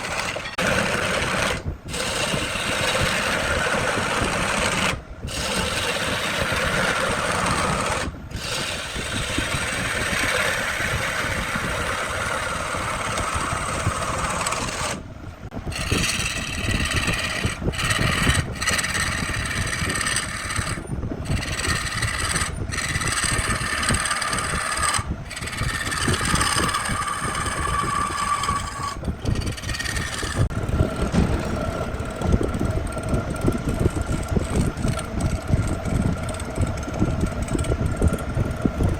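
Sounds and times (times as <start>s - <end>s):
wood lathe running: 0.0s - 15.0s, 15.6s - 38.9s
tool scraping spinning wood: 0.0s - 38.9s.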